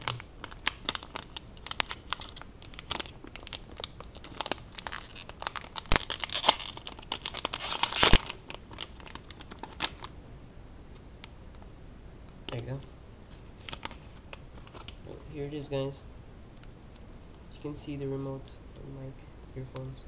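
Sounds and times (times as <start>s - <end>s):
packaging tearing and crinkling: 0.0s - 10.1s, 13.6s - 15.0s.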